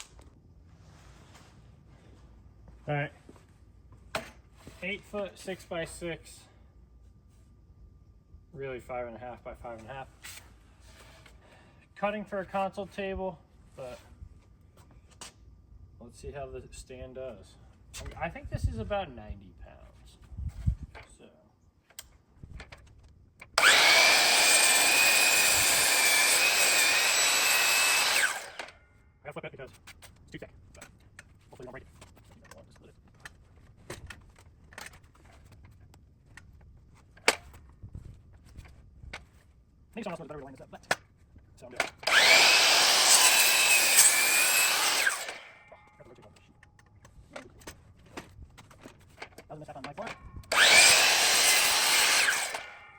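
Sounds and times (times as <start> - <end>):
electric miter saw whine: 23.5 - 28.8, 41.9 - 45.9, 50.4 - 52.9
saw blade cutting timber: 23.6 - 28.8, 41.8 - 45.8, 50.5 - 52.9.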